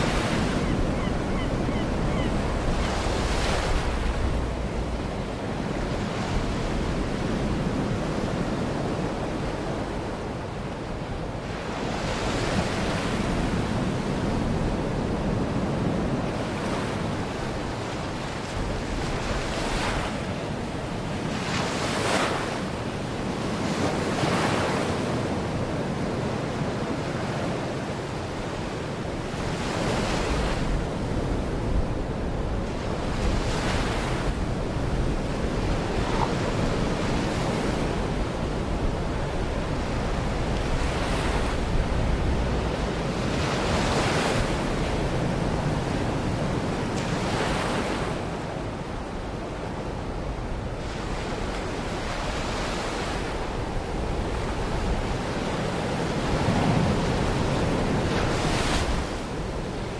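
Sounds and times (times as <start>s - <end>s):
wind rumbling on microphone: 0.0s - 22.5s, 29.1s - 59.9s
waves washing onto a beach: 2.1s - 59.9s.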